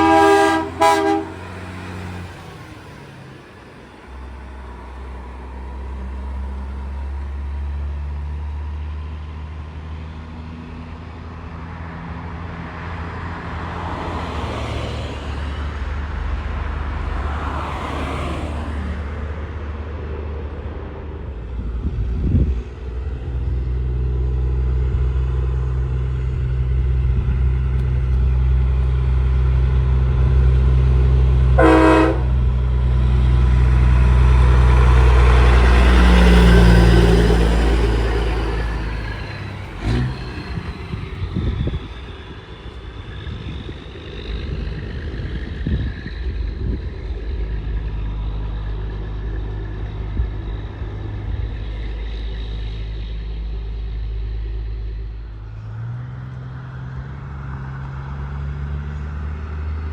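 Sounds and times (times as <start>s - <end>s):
air horn toot: 0.0s - 1.9s, 31.6s - 32.7s
diesel truck passing: 0.0s - 59.9s
passing traffic: 0.0s - 59.9s.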